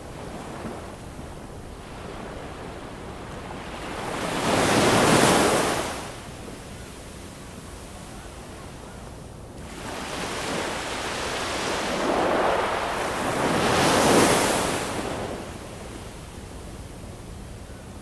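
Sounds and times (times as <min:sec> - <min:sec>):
ocean wave washing on shore: 0:09.6 - 0:15.9.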